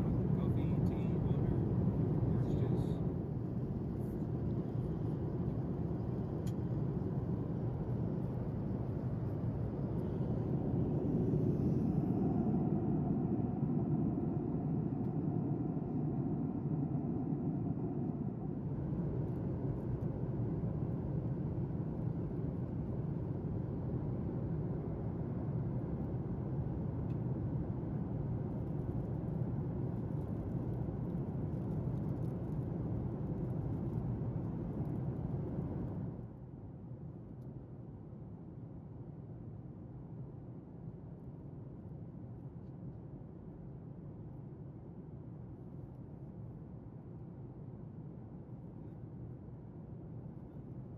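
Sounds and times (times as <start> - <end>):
aircraft cabin engine drone: 0.0 - 36.3
faint steady whine: 0.0 - 50.9
airflow noise: 10.5 - 18.8.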